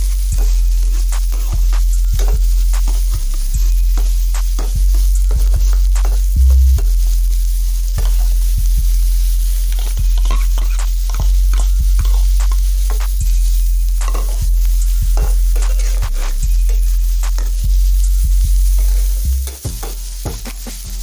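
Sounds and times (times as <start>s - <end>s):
vegetables sizzling in a pan: 0.0s - 21.0s
utensil scraping a pan: 9.7s - 13.1s, 14.0s - 17.6s.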